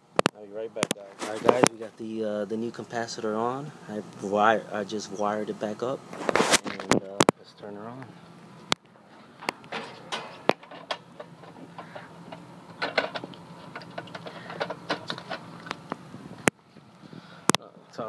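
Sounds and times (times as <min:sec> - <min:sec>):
steady low hum: 0:00.0 - 0:18.0
tools clicking and knocking: 0:09.4 - 0:15.4.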